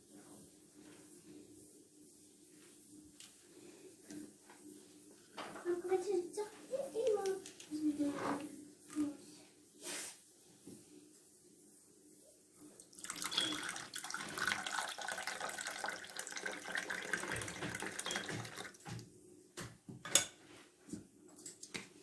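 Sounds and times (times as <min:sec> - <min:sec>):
water running from a tap: 0:12.8 - 0:19.0.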